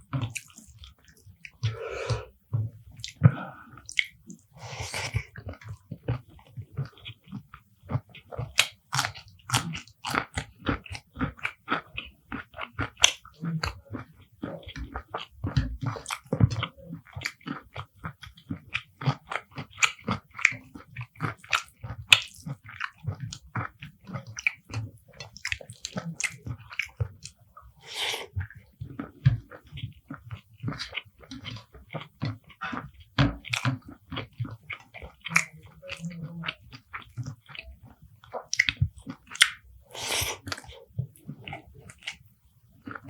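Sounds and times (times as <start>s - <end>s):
person chewing food: 0.0s - 43.0s
wet mouth smacks and clicks: 38.5s - 40.7s.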